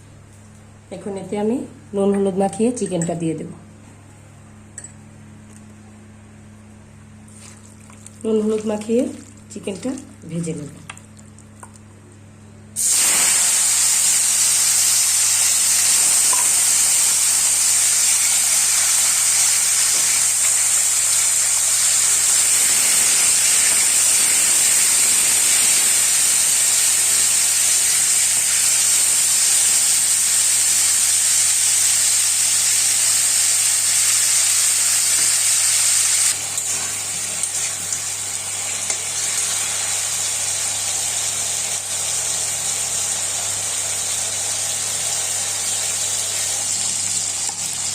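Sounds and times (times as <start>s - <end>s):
chicken sizzling in hot oil: 12.8s - 47.9s.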